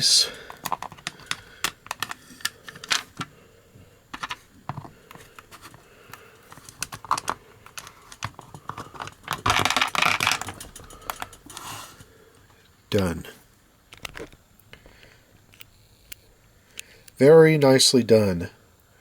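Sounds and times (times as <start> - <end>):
plastic rubbing scrape: 0.5 - 3.3, 4.1 - 12.0.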